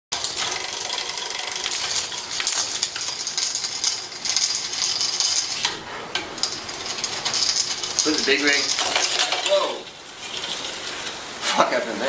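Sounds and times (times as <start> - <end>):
bike chain ticking over sprockets: 0.1 - 5.7, 6.4 - 9.6.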